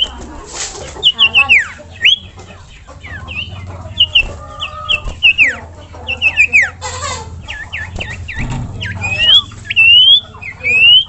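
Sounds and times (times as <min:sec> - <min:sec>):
rasping bird call: 0:03.0 - 0:11.0
bird whistling high notes: 0:07.5 - 0:11.0.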